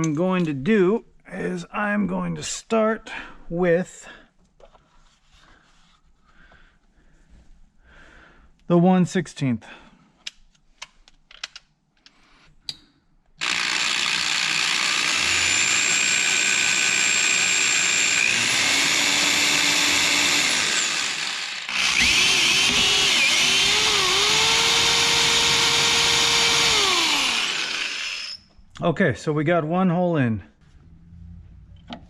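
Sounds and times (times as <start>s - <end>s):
electric drill boring metal: 13.4s - 28.4s.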